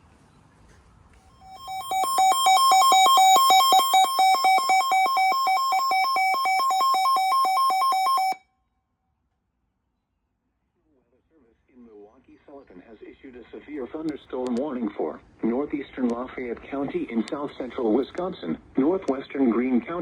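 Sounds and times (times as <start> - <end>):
weather radio alarm beeping: 1.4 - 8.4.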